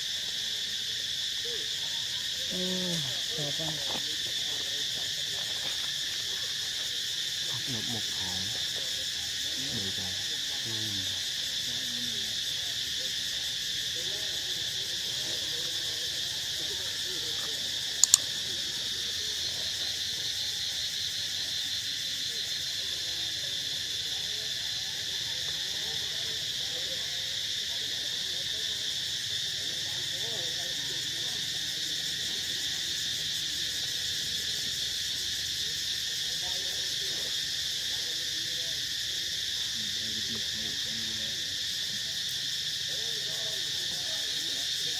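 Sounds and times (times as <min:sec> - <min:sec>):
shrill insect chorus: 0:00.0 - 0:44.9
sharp double click: 0:18.0 - 0:18.3.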